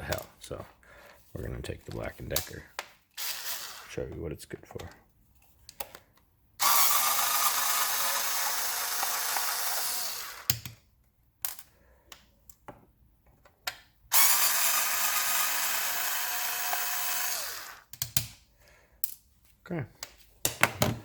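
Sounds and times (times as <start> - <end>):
power screwdriver motor whine: 3.2 - 3.9, 6.6 - 10.6, 14.1 - 17.9.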